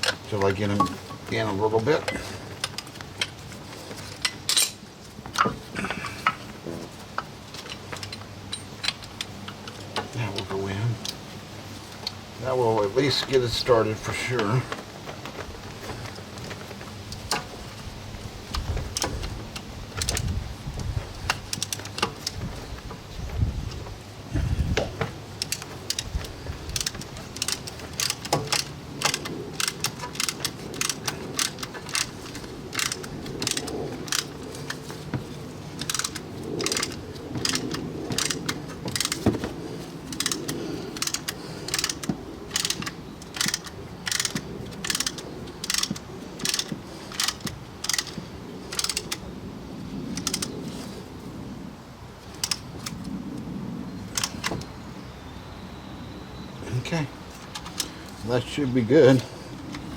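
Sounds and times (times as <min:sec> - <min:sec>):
brake tool metallic clicking: 0:25.4 - 0:49.2.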